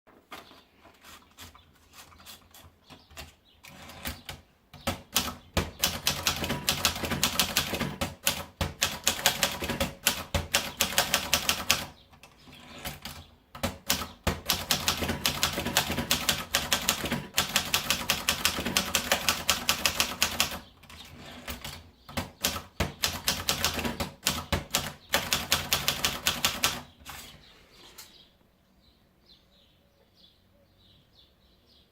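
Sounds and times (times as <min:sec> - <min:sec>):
manual typewriter typing: 0:02.3 - 0:27.3.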